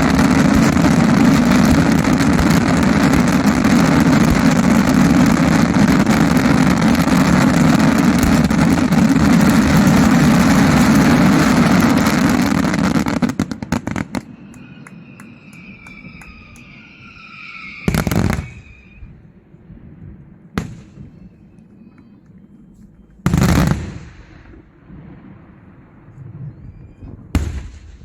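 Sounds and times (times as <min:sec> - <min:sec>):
firework salutes rumbling: 0:00.0 - 0:21.5.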